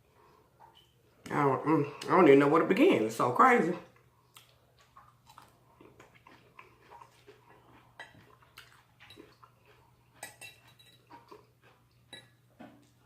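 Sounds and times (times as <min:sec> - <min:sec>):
chewing food: 0:03.8 - 0:13.0.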